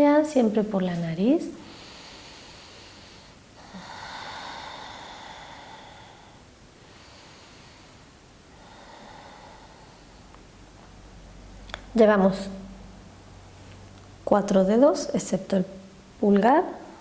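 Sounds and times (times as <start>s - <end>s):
person breathing through nose: 1.6s - 10.4s.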